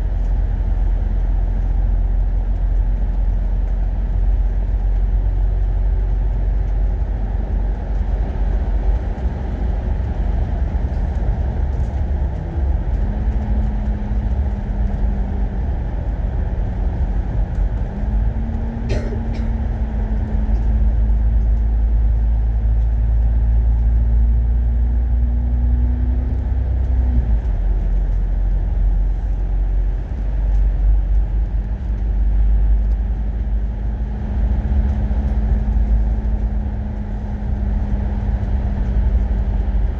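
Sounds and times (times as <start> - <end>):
bus engine and road rumble: 0.0 - 39.9.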